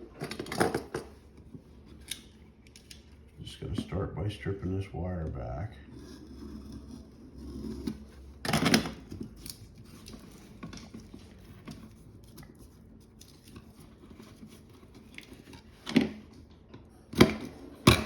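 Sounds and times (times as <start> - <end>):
clicks and rustles of handling: 7.5 - 18.0.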